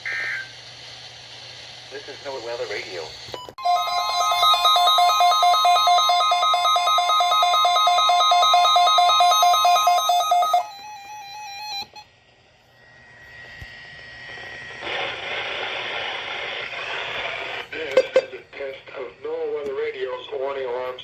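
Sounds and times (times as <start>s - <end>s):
radio static hiss: 0.0s - 3.6s, 14.3s - 21.0s
rapid electronic alarm beeping: 3.6s - 15.8s.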